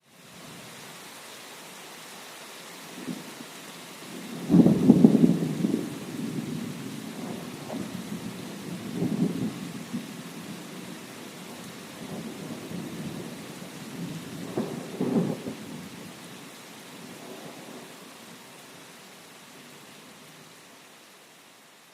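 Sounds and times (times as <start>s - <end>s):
rain hissing: 0.0s - 21.9s
thunder rumbling: 4.3s - 16.0s.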